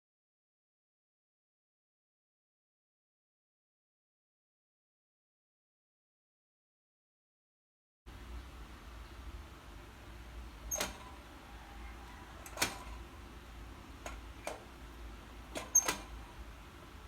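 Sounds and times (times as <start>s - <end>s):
sharp clicks and knocks: 10.7s - 11.2s, 12.4s - 13.0s, 14.0s - 14.8s, 15.5s - 16.3s.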